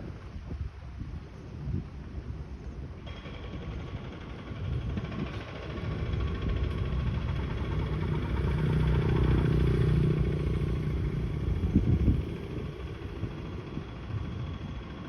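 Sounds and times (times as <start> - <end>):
vehicle engine running: 3.0 - 15.0.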